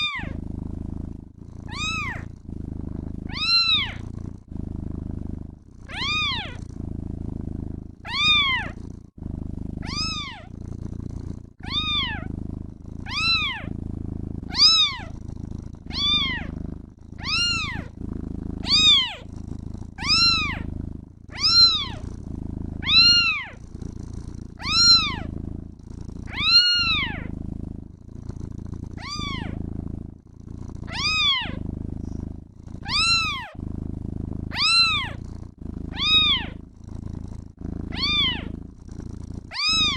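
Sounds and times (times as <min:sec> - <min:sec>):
kitten meowing: 0:00.0 - 0:00.4, 0:01.7 - 0:02.3, 0:03.3 - 0:04.0, 0:05.9 - 0:06.6, 0:08.1 - 0:08.8, 0:09.8 - 0:10.5, 0:11.6 - 0:12.3, 0:13.1 - 0:13.7, 0:14.5 - 0:15.1, 0:15.9 - 0:16.5, 0:17.2 - 0:17.9, 0:18.6 - 0:19.2, 0:20.0 - 0:20.6, 0:21.3 - 0:22.0, 0:22.8 - 0:23.6, 0:24.6 - 0:25.3, 0:26.3 - 0:27.3, 0:29.0 - 0:29.6, 0:30.9 - 0:31.6, 0:32.8 - 0:33.6, 0:34.5 - 0:35.2, 0:35.9 - 0:36.6, 0:37.9 - 0:38.5, 0:39.5 - 0:39.9
low purring: 0:00.0 - 0:39.9.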